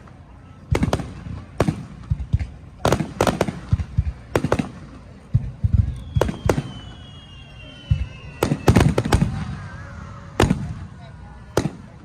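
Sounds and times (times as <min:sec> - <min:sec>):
fireworks bursting with bangs: 0:00.0 - 0:12.0.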